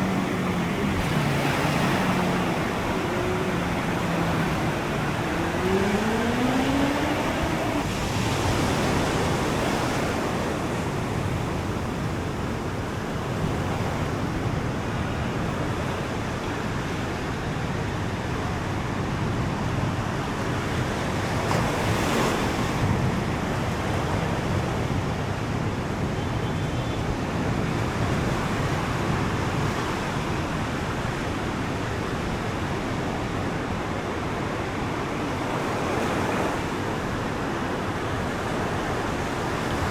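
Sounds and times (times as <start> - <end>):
motor pitch rising: 0.0 - 8.0
ocean surf washing onto beach: 0.0 - 39.9
wind on microphone: 0.0 - 39.9.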